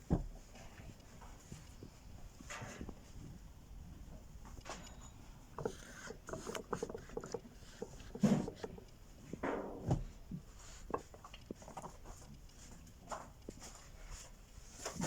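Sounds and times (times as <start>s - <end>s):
metal parts and tools clicking: 4.6s - 9.0s.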